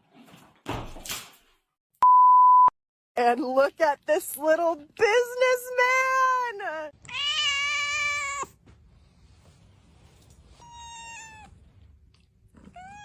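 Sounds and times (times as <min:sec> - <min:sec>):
cat meowing: 0:07.0 - 0:08.6, 0:10.6 - 0:11.6, 0:12.6 - 0:13.0.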